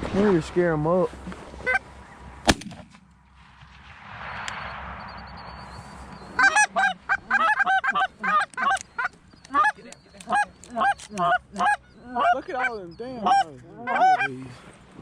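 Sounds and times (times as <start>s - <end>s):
geese honking: 1.6s - 2.2s, 6.0s - 14.6s.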